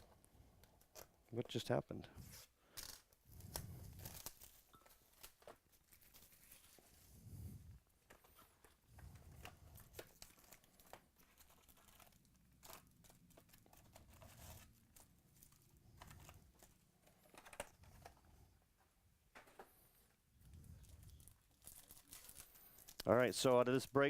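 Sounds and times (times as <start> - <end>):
card packs crinkling: 2.7 - 7.0, 8.0 - 18.2, 20.5 - 24.0.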